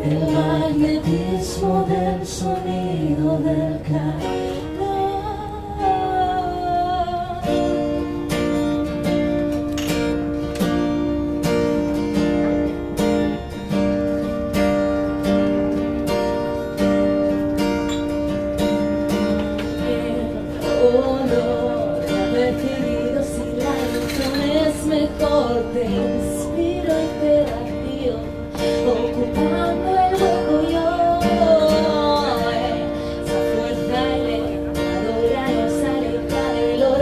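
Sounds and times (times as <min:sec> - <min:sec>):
acoustic guitar strumming: 0:00.0 - 0:37.0
person singing: 0:19.6 - 0:37.0.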